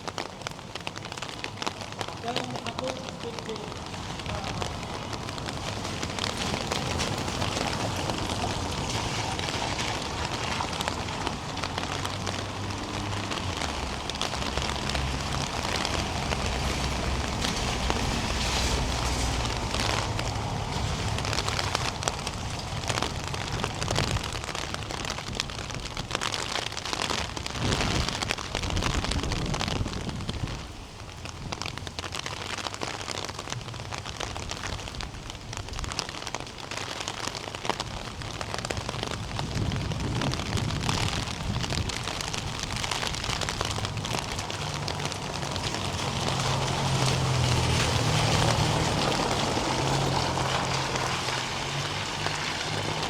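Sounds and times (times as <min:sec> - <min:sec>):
raindrops pattering: 0:00.0 - 0:53.0.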